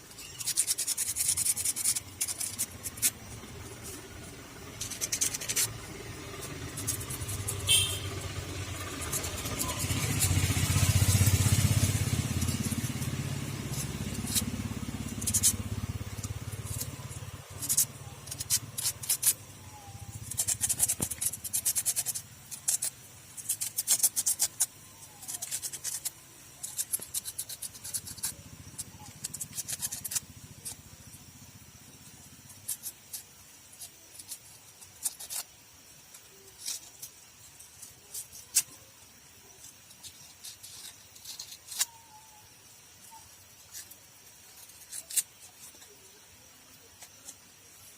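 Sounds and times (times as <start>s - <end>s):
vehicle low rumble: 0.0s - 23.6s
scraping spark plug: 0.1s - 31.2s, 31.8s - 42.1s, 42.7s - 46.2s.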